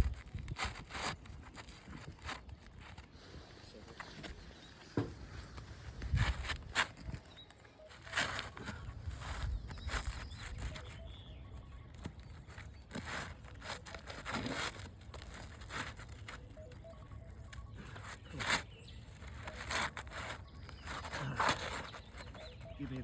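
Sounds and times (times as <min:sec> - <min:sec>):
wind rumble on microphone: 0:00.0 - 0:00.8
shingles scraping on roof: 0:12.1 - 0:16.4, 0:17.8 - 0:23.0.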